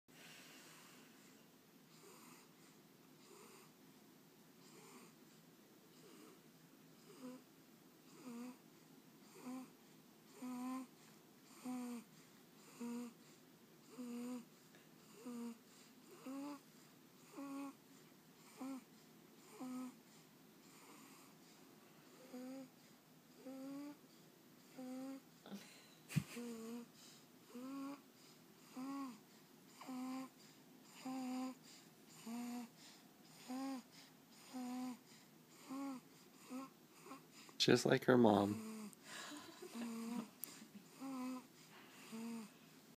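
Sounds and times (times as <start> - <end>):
baby snoring: 1.9 - 2.6, 3.2 - 3.8, 4.6 - 5.2, 5.9 - 6.4, 7.0 - 8.6, 9.2 - 21.4, 22.1 - 24.0, 24.6 - 25.3, 26.3 - 37.6, 38.5 - 39.0, 39.6 - 42.6.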